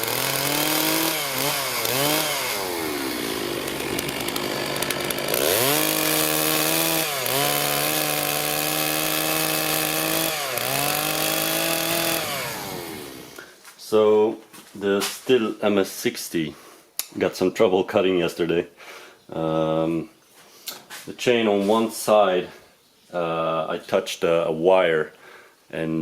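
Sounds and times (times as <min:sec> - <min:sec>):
chainsaw cutting firewood: 0:00.0 - 0:13.5.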